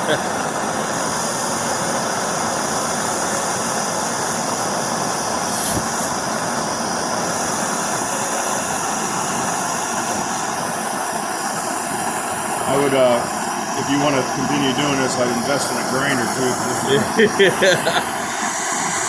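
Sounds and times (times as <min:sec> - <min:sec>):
gas torch flame hissing: 0:00.0 - 0:19.0.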